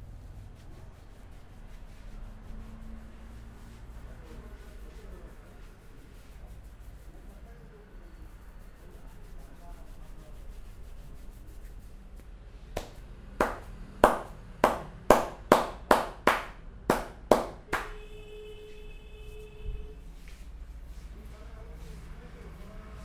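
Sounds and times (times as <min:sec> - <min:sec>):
hands slapping a head: 0:12.2 - 0:18.0.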